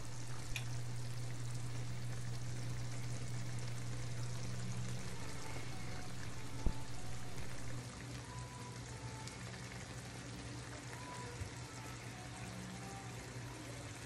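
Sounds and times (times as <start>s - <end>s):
low hum: 0.0s - 7.8s
gravy sizzling and bubbling: 0.0s - 14.0s.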